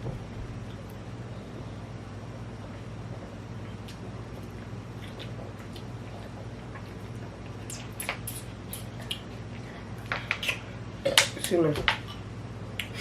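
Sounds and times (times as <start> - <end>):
steady low hum: 0.0 - 13.0
wet chewing clicks: 3.6 - 11.3.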